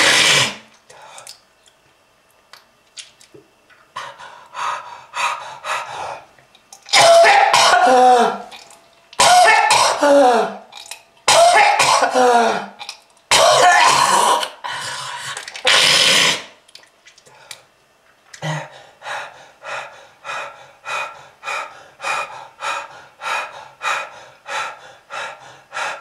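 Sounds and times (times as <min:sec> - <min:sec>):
person coughing hard: 0:06.9 - 0:08.5, 0:09.2 - 0:10.6, 0:11.3 - 0:14.5.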